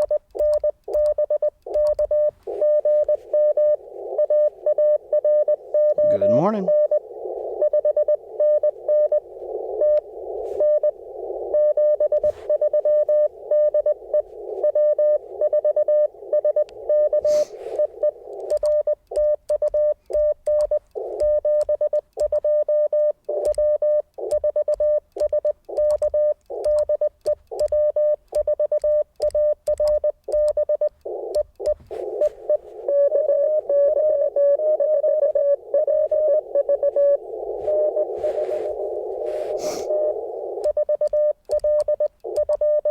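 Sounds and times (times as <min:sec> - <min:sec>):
morse code tone: 0:00.0 - 0:42.9
radio receiver hiss: 0:01.6 - 0:18.8, 0:30.3 - 0:42.4.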